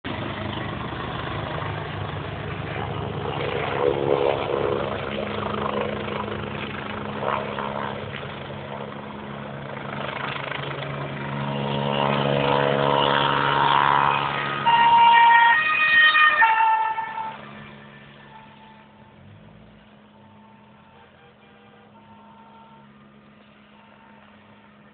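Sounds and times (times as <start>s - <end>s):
road traffic engine drone: 0.0s - 24.9s
vehicle horn: 14.6s - 19.0s, 20.1s - 23.0s.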